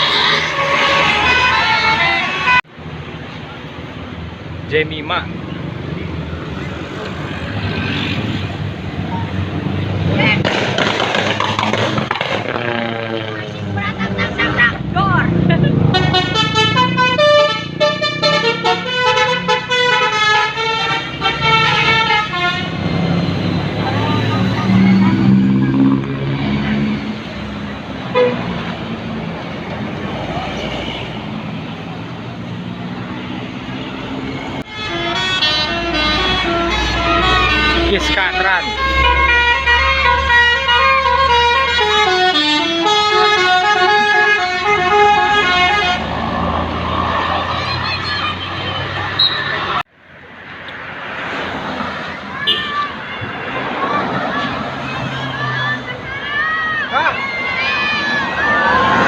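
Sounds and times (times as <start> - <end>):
multi-tone bus horn tune: 0.0 - 2.7, 15.7 - 23.1, 28.1 - 28.6, 34.6 - 46.2, 52.4 - 52.9.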